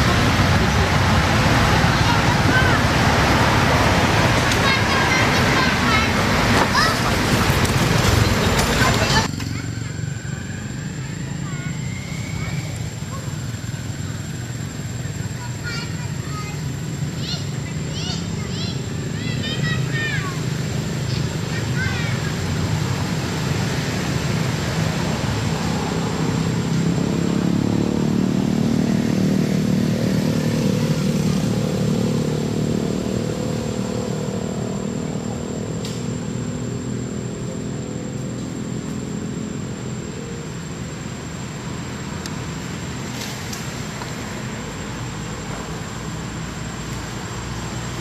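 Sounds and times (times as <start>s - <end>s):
vehicle engine running: 0.0s - 10.3s
road noise: 0.0s - 48.0s.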